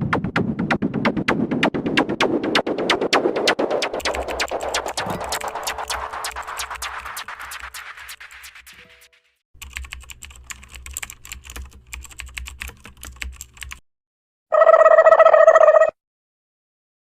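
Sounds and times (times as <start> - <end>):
rapid keyboard typing: 3.4 - 13.8.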